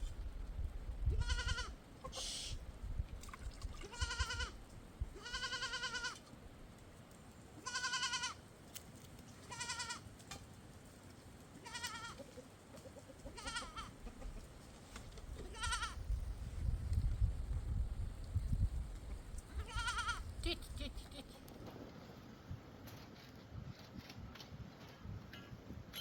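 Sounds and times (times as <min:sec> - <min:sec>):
sheep bleating: 0:01.1 - 0:02.2, 0:05.2 - 0:06.2, 0:07.6 - 0:08.4, 0:09.5 - 0:10.0, 0:11.6 - 0:12.2, 0:13.3 - 0:13.9, 0:19.6 - 0:20.2.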